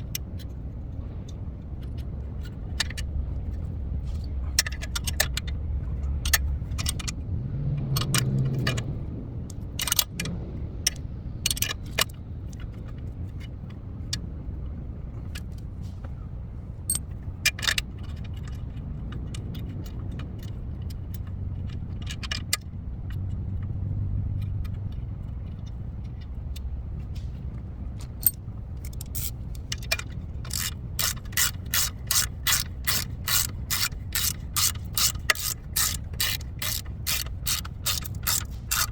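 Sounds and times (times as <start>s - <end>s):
ratchet wrench clicking: 4.5s - 14.2s, 16.9s - 27.2s, 27.9s - 38.9s.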